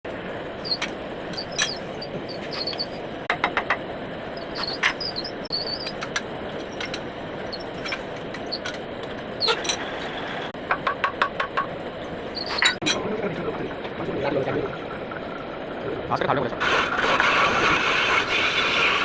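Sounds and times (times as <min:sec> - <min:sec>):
brief high squeaks: 0:01.4 - 0:03.0.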